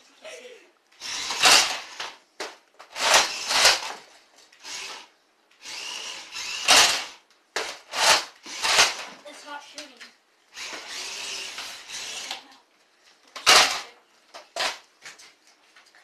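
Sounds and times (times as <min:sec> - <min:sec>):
toy blaster motor whirring: 0:01.0 - 0:02.2, 0:02.9 - 0:04.0, 0:04.6 - 0:09.1, 0:10.5 - 0:12.6, 0:13.4 - 0:13.9.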